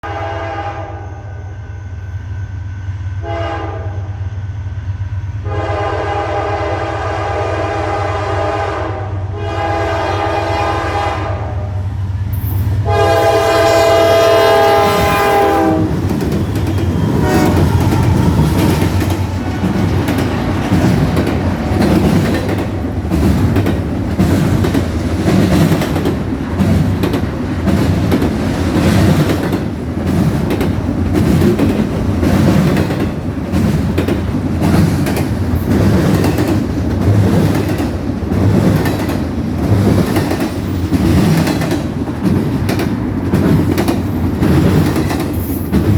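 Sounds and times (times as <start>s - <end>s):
train horn blasts: 0.0s - 2.1s, 3.0s - 16.0s, 16.8s - 19.9s
locomotive engine drone: 11.7s - 27.9s
train wheels clattering on rails: 12.3s - 45.9s.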